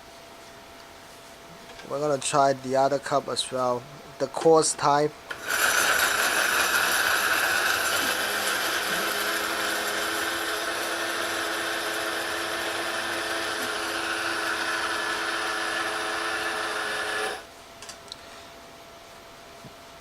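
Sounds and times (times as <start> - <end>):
coffee grinder motor whine: 5.3 - 17.5.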